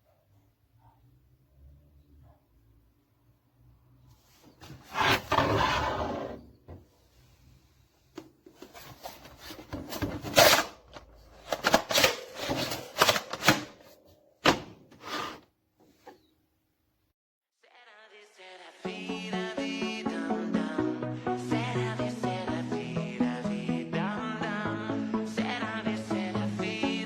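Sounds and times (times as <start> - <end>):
camping stool rubbing and scraping: 4.3 - 6.8, 14.9 - 15.5.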